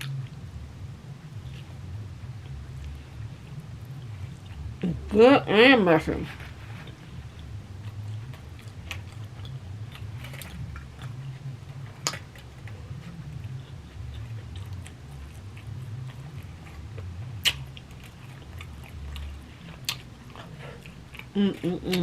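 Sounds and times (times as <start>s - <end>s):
person chewing food: 6.4s - 22.0s.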